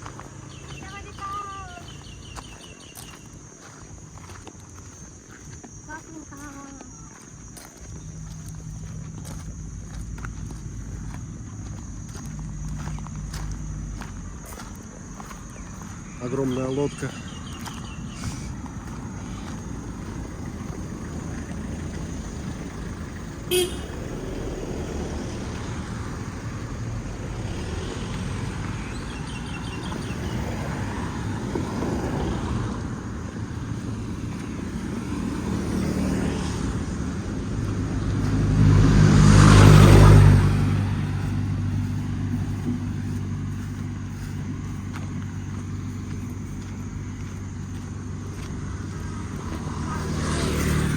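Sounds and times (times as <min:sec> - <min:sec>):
low engine hum: 0:00.0 - 0:50.9
traffic going by: 0:00.0 - 0:50.9
vehicle passing close: 0:07.8 - 0:50.9
car horn toot: 0:23.4 - 0:24.3.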